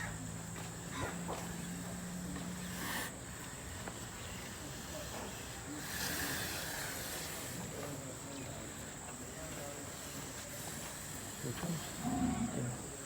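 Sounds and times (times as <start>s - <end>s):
faint distant voices: 0.0s - 13.0s
outdoor background noise: 0.0s - 13.0s
hiss: 2.6s - 3.2s, 4.3s - 8.1s, 9.9s - 12.0s.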